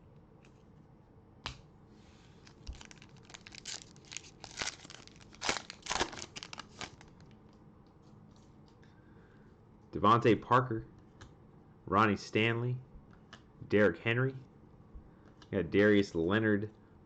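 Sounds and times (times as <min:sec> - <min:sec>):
plastic wrapper tearing and crinkling: 0:02.4 - 0:07.3.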